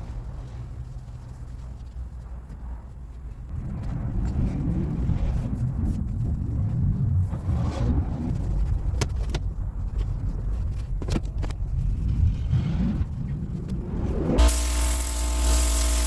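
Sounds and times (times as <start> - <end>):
low rumble: 0.0 - 15.9
buzzing tone: 14.1 - 16.0
compressed air hissing: 14.4 - 16.0.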